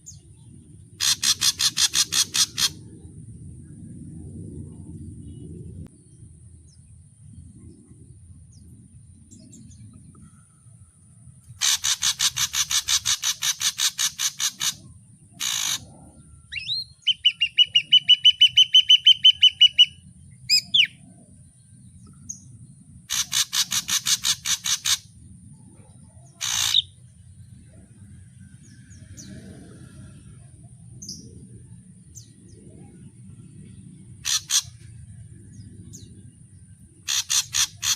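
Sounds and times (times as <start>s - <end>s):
bird singing varied phrases: 11.6s - 21.1s, 26.2s - 27.0s, 34.2s - 34.9s, 37.1s - 37.9s.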